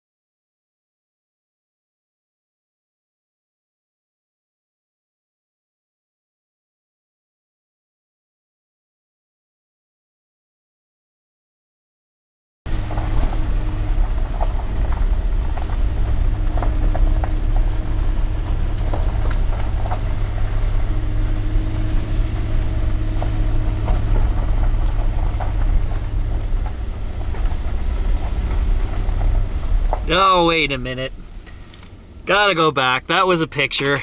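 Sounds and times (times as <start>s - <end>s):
truck engine and road rumble: 12.7s - 34.0s.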